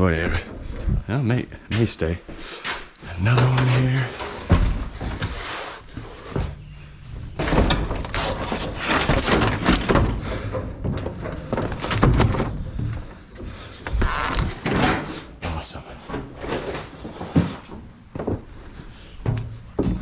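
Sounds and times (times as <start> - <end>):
wood knocking and scraping on wood: 2.6 - 18.5.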